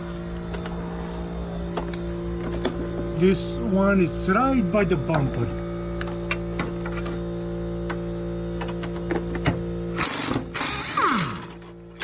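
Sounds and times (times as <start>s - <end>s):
machine hum: 0.0s - 12.0s
power tool rushing and whining: 8.6s - 12.0s.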